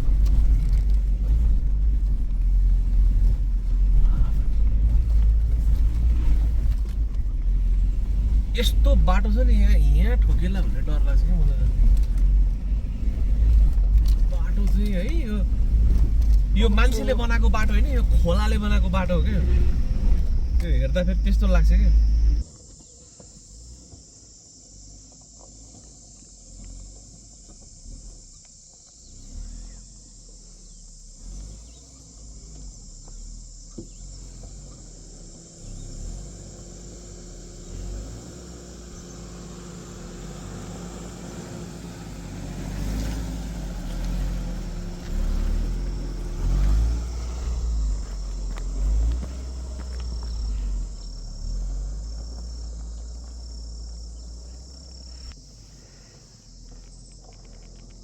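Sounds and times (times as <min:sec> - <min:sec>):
wheels thudding over rocks: 0:00.0 - 0:29.2, 0:32.6 - 0:55.4
car engine running slowly: 0:00.0 - 0:58.0
high insect drone: 0:16.6 - 0:58.0.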